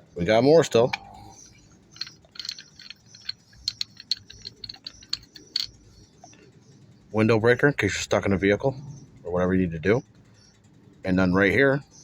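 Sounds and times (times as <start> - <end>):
light metal clicks and taps: 1.9 - 6.4.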